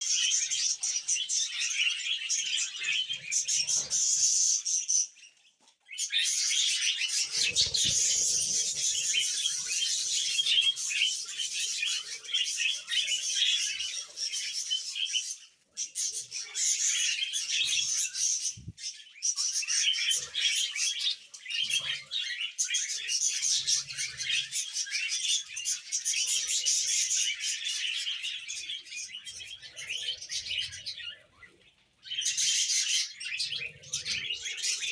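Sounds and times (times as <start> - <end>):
budgerigars chattering and chirping: 0.1 - 5.3, 5.9 - 34.9.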